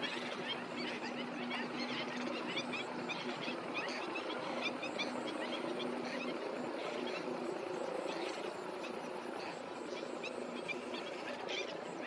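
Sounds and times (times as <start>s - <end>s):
flock of birds chirping: 0.0s - 12.0s.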